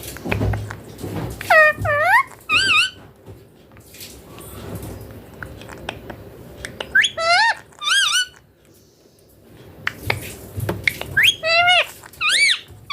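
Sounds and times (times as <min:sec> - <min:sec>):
parakeet shrill calls: 0:01.5 - 0:03.0, 0:06.8 - 0:08.4, 0:10.9 - 0:12.9.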